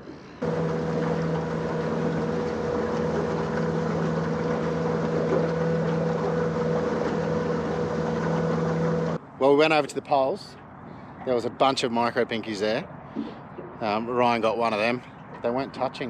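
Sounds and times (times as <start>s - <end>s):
outboard motor running: 0.0s - 9.2s
rush of wind and water: 0.4s - 16.0s.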